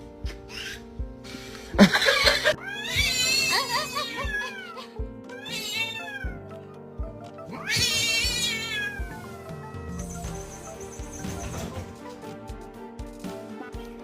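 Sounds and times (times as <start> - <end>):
background music with steady beat: 0.0 - 14.0
cat meowing: 2.5 - 6.5, 7.4 - 10.3.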